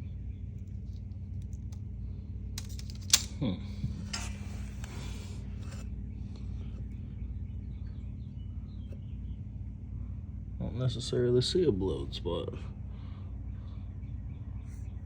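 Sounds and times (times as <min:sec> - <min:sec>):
steady low hum: 0:00.0 - 0:15.0
metal parts clicking: 0:02.6 - 0:03.4
scraping and rustling: 0:03.8 - 0:05.9.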